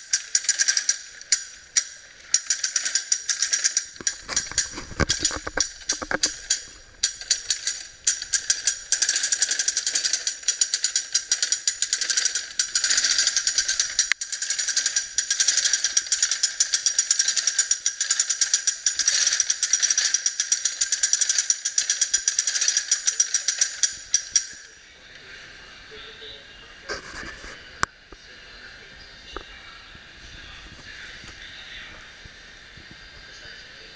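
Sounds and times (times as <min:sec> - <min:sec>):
braiding machine clattering clicks: 0:00.0 - 0:24.7.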